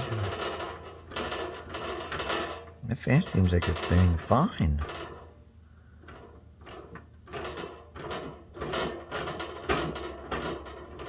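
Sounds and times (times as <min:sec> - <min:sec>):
hands handling heater parts: 0:00.0 - 0:11.0.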